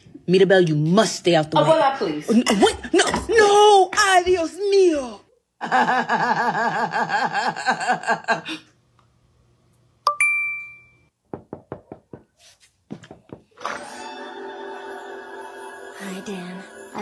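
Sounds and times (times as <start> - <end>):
bright ding: 10.1 - 11.1
knocks on a door: 11.3 - 12.3, 12.9 - 13.5.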